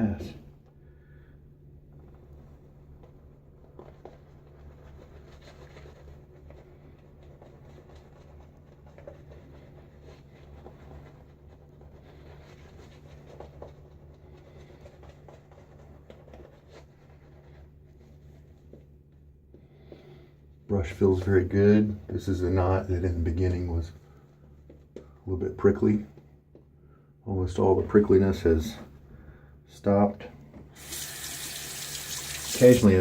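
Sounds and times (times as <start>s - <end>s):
shaving brush lathering: 30.8s - 33.0s.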